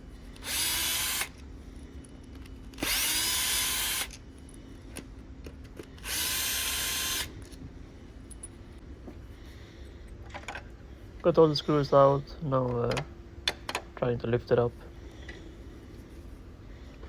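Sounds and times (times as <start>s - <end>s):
electric drill running: 0.4s - 1.4s, 2.8s - 4.2s, 6.0s - 7.4s.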